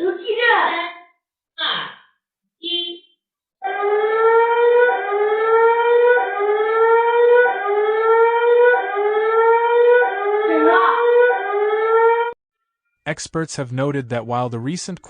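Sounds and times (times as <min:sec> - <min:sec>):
rising siren alarm: 0:03.6 - 0:12.4.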